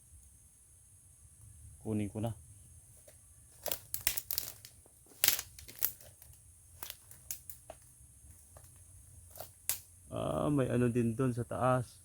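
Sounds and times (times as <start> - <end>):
dry vegetation crackling: 3.0 - 10.0.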